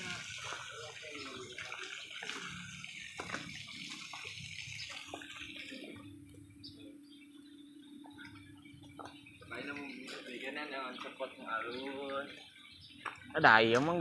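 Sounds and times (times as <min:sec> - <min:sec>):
water running and splashing: 0:00.0 - 0:07.0, 0:08.0 - 0:14.0
faint steady hum: 0:00.0 - 0:13.3.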